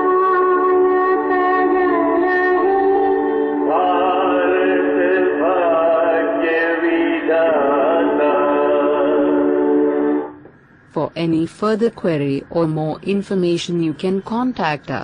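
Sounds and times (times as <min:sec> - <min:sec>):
sung melody with gliding pitch: 0:00.0 - 0:05.7
steady instrumental drone: 0:00.0 - 0:15.0.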